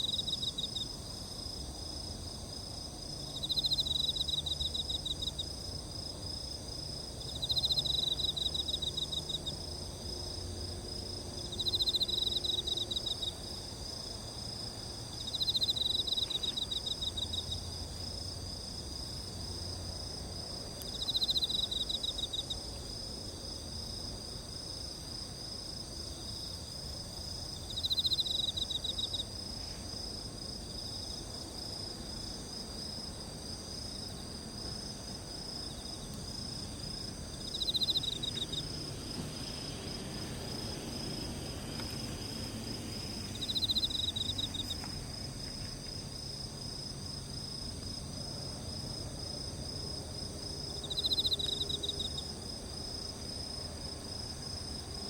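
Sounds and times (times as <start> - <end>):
high-pitched insect chorus: 0.0 - 55.0
insect pulsing trill: 36.8 - 38.9, 43.0 - 44.9.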